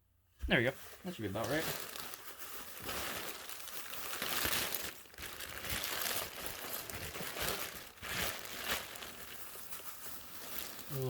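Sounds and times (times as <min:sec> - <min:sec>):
packaging rustling and crinkling: 0:00.8 - 0:11.0.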